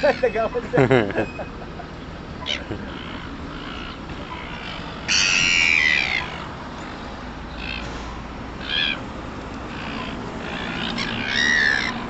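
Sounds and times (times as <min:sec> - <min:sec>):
gull squawking: 0:02.4 - 0:06.5, 0:08.6 - 0:09.0, 0:09.7 - 0:12.0.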